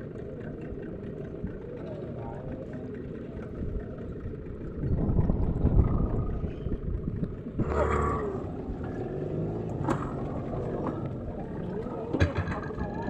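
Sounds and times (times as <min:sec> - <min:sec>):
boat engine running: 0:00.0 - 0:13.0
wind and waves rumble: 0:02.9 - 0:13.0.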